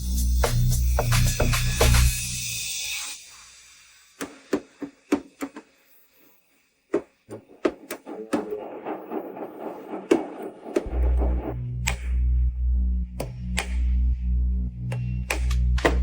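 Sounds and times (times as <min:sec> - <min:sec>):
heavy low bass: 0:10.8 - 0:16.0.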